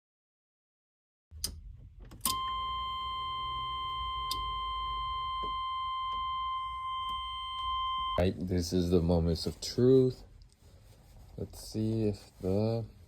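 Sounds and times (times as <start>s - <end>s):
high electronic beep tone: 2.3s - 8.2s.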